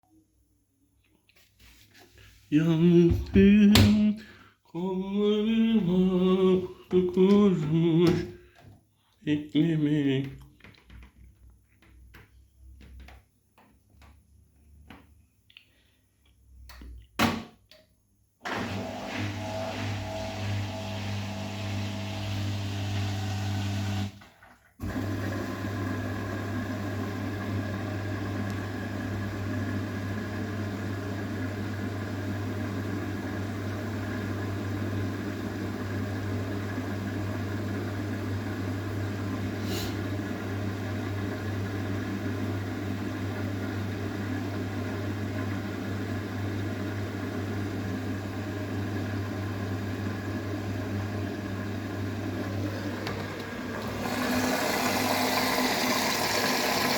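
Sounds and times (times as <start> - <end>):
washing machine humming: 18.4 - 24.2, 24.8 - 56.9.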